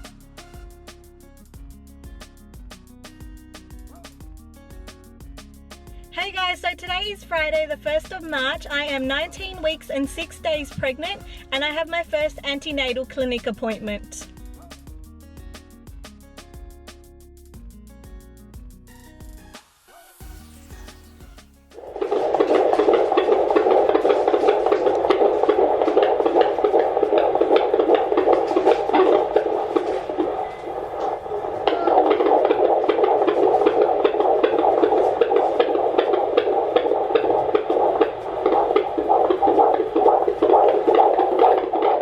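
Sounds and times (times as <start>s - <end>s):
fetal heartbeat on doppler monitor: 5.9s - 14.3s, 21.8s - 42.0s.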